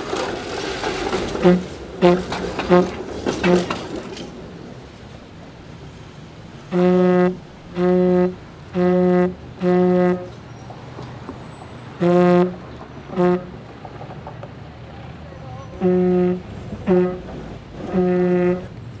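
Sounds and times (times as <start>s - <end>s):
vuvuzela blasts: 1.4s - 3.8s, 6.7s - 10.3s, 12.0s - 13.6s, 15.7s - 18.7s.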